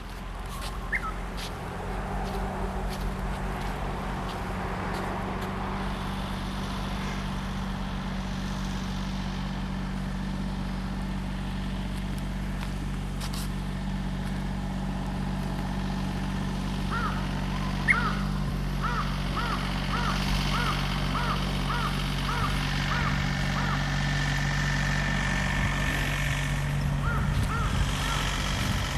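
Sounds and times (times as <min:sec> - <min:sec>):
low engine drone: 0:00.0 - 0:28.9
bird chirps: 0:00.5 - 0:01.2, 0:17.8 - 0:18.2.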